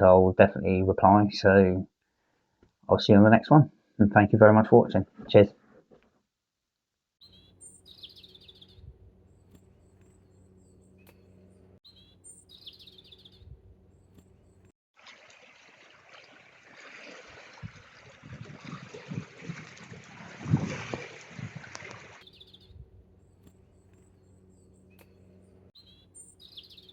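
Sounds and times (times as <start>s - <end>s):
small bird calling with trill: 7.2s - 14.7s, 22.1s - 26.9s
wind buffeting microphone: 17.0s - 23.1s
wind rushing: 17.5s - 22.1s.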